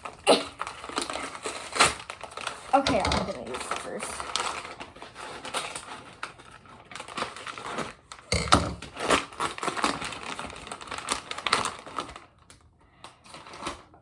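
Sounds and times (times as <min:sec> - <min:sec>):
packaging crinkling and rustling: 0:00.0 - 0:14.0.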